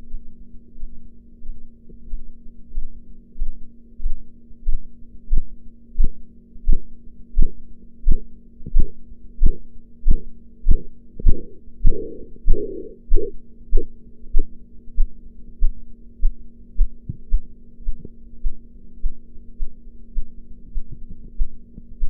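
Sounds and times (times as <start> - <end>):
steady low hum: 0.0 - 22.0
pulse tapping through stethoscope: 8.1 - 13.9.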